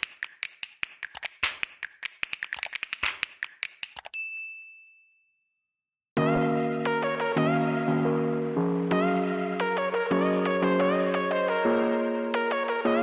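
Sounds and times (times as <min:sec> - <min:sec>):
typewriter key clacks: 0:00.0 - 0:04.1
typewriter bell ding: 0:04.0 - 0:05.4.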